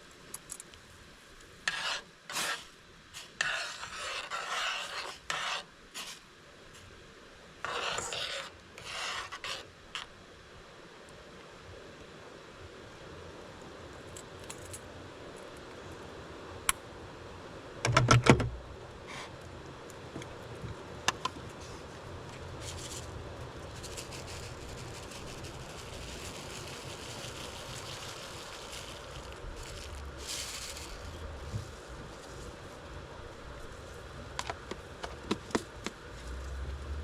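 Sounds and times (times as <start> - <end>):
small hard objects clinking: 23.7 - 31.2.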